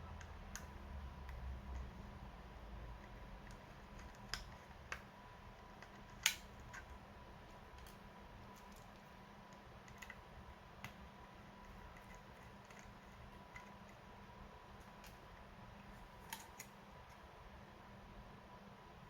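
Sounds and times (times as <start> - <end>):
faint steady hum: 0.0 - 19.0
laptop parts and tools clicking: 2.9 - 14.1, 14.8 - 17.2.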